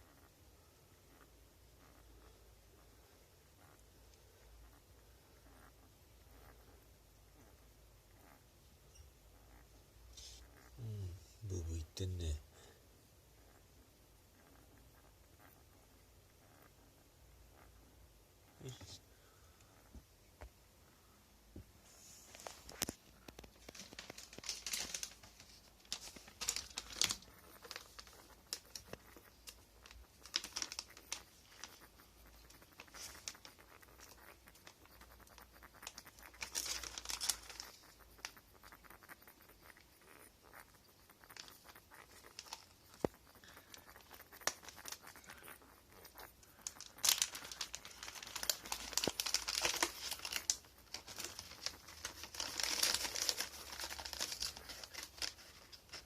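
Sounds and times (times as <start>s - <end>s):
dry rustling and crinkling: 21.9s - 56.0s.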